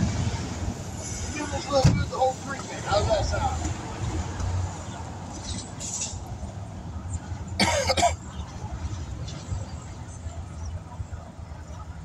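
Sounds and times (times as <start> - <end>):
person coughing: 7.6 - 8.2.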